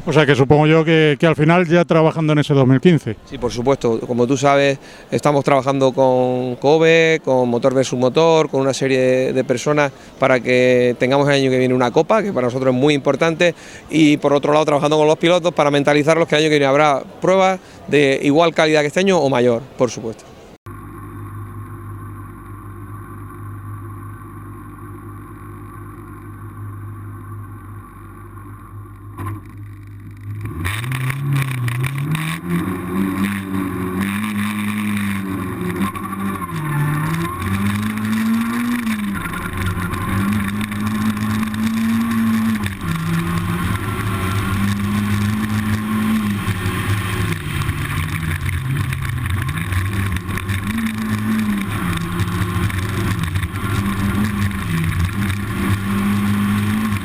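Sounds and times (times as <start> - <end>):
low steady hum: 20.3 - 57.0
rally car engine revving: 21.2 - 57.0.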